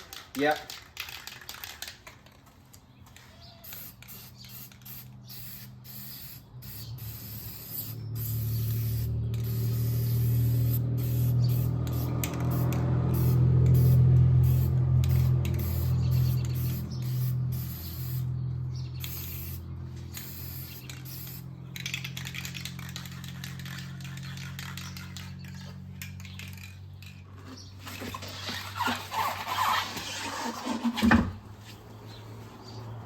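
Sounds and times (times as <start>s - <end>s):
spray can hissing bursts: 3.5s - 18.3s, 19.0s - 25.3s.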